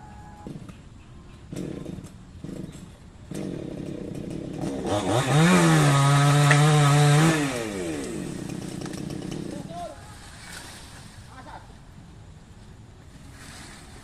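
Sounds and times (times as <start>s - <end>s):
chainsaw idling and revving: 1.5s - 9.9s.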